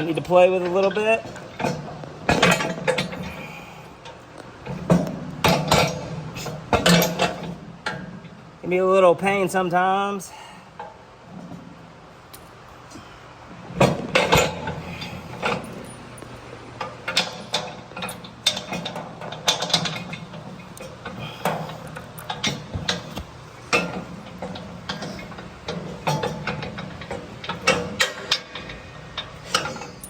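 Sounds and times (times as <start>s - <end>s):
metal bolt clicking and clanking: 0.6s - 3.3s, 4.0s - 8.1s, 13.8s - 16.2s, 16.8s - 30.0s.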